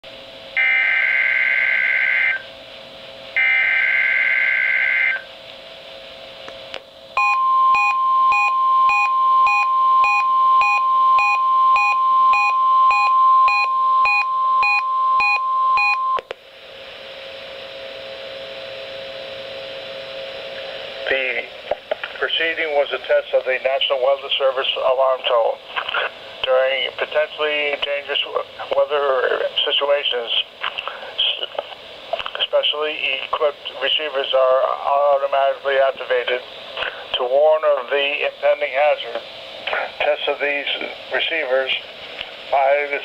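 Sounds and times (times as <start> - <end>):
steady alarm tone: 0.6 - 2.5, 3.4 - 5.3, 7.2 - 16.2
pulsing beep: 7.2 - 16.2
radio hiss: 20.5 - 43.0.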